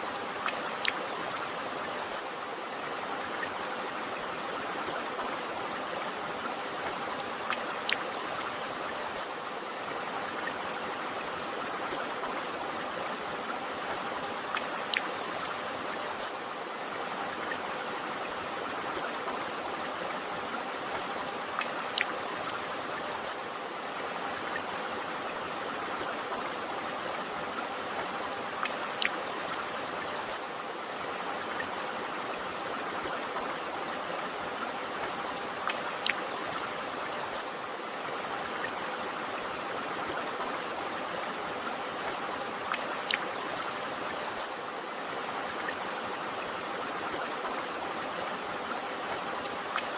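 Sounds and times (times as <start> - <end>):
sharp drip-like ticks: 0.0 - 2.3, 6.8 - 9.4, 13.8 - 16.4, 20.9 - 23.4, 28.0 - 30.4, 35.0 - 37.5, 42.0 - 44.6
stream water rushing: 0.0 - 49.9.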